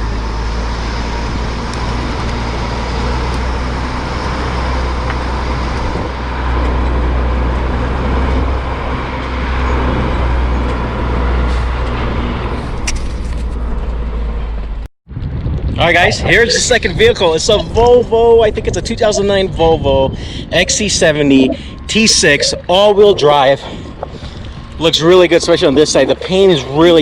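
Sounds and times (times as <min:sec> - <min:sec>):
motorhome engine droning: 0:00.0 - 0:14.9, 0:15.8 - 0:27.0.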